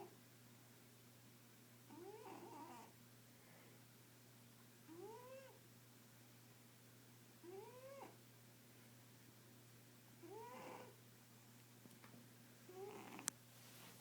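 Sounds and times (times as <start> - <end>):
cat snoring with faint whine: 1.9 - 3.0, 4.9 - 5.6, 7.4 - 8.2, 10.2 - 11.0, 12.7 - 13.3.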